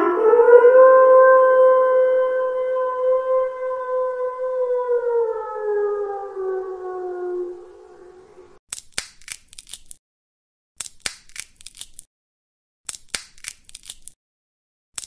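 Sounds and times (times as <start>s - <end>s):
peanut shells cracking: 8.7s - 10.0s, 10.8s - 12.1s, 12.9s - 14.2s.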